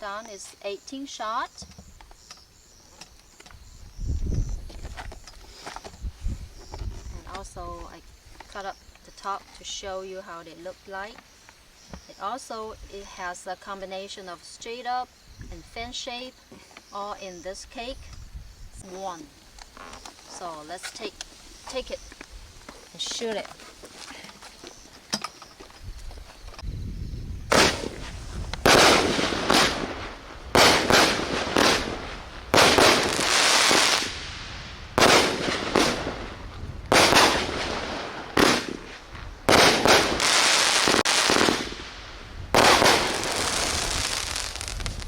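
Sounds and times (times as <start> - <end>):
firework bangs: 27.5 - 45.0
firework hissing: 27.5 - 45.0.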